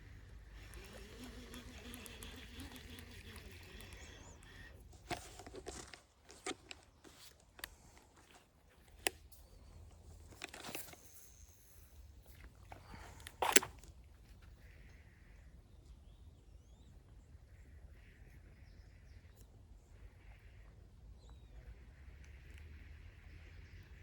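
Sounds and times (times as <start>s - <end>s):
sharp clicks: 0.4s - 8.1s
rustling and crunching: 0.6s - 14.5s.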